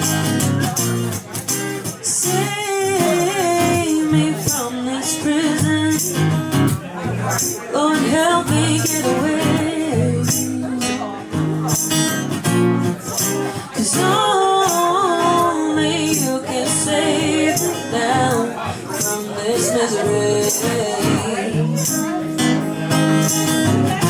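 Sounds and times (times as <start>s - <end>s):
bass: 0.0s - 4.7s, 5.3s - 14.4s, 15.1s - 24.0s
live blues-rock band: 0.0s - 24.0s
strummed guitar: 0.0s - 24.0s.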